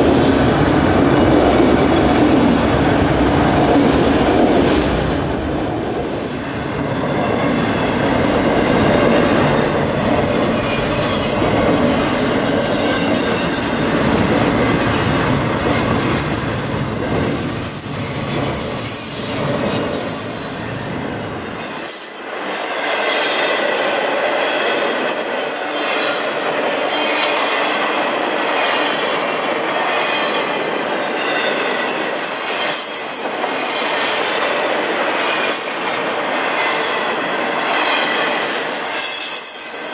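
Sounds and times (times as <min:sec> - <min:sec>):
railroad cars rumbling: 0:00.0 - 0:39.9
steel wheels squealing on rails: 0:04.4 - 0:39.9.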